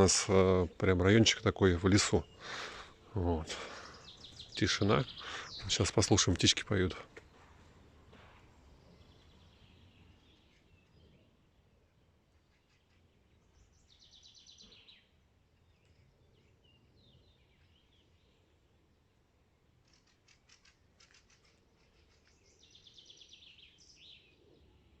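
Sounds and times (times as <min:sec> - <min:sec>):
songbirds singing: 0:00.0 - 0:25.0
rapid ticks: 0:19.8 - 0:22.4.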